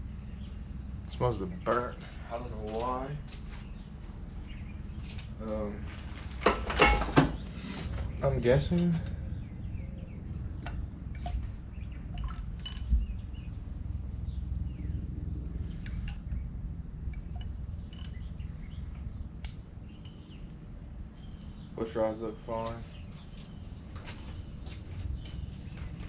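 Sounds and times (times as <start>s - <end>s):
low background rumble: 0.0s - 26.0s
metallic clicks and clinks: 12.1s - 13.1s, 17.1s - 18.4s.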